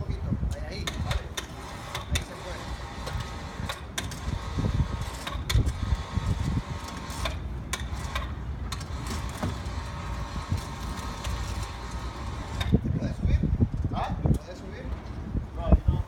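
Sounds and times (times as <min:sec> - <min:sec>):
sharp knocks and clanks: 0:00.7 - 0:04.4, 0:06.9 - 0:10.0.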